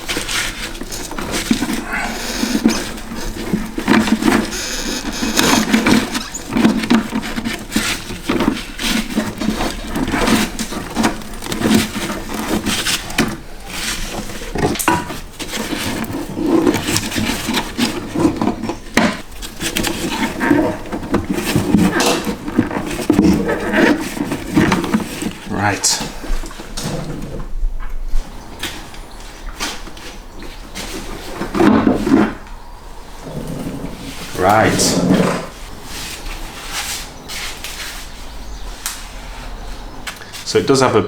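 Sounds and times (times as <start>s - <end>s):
metal knocking and scraping: 0.0s - 25.4s
rubber creaking and squeaking: 0.0s - 25.4s.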